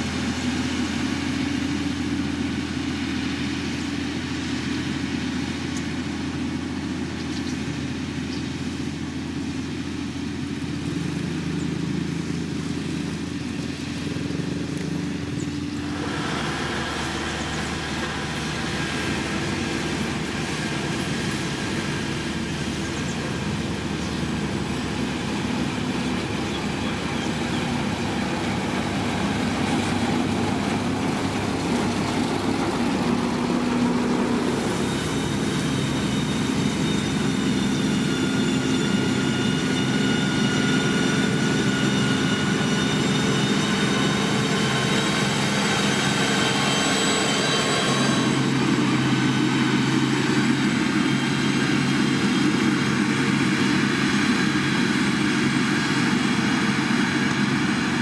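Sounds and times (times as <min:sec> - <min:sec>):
diesel engine running: 0:00.0 - 0:58.0
high whine: 0:15.2 - 0:58.0.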